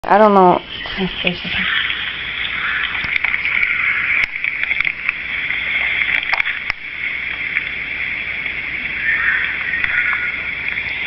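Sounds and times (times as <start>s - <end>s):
faint clicks and taps: 2.8s - 7.7s.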